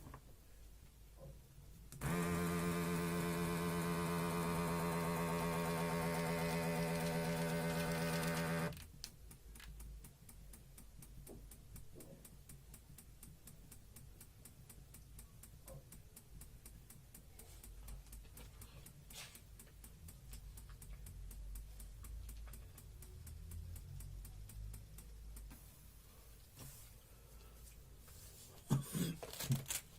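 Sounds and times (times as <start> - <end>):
electric air pump buzzing: 2.0 - 8.8
even ticking: 3.4 - 25.5.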